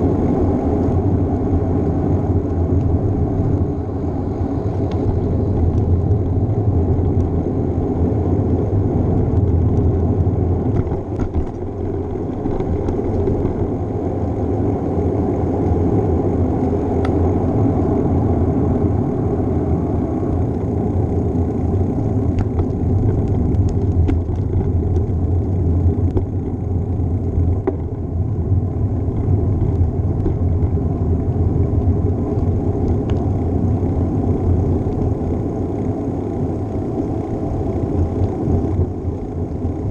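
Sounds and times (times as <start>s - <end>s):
wind rush: 0.0s - 26.1s
bicycle road rumble: 0.0s - 39.9s.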